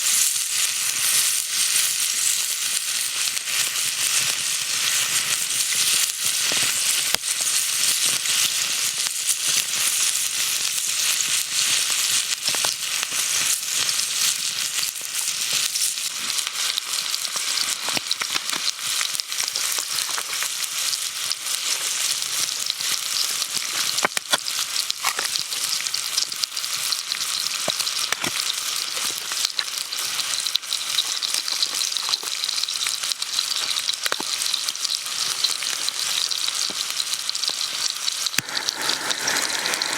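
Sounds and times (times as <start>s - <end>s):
food sizzling in a pan: 0.0s - 39.9s
sharp pops: 38.4s - 39.9s.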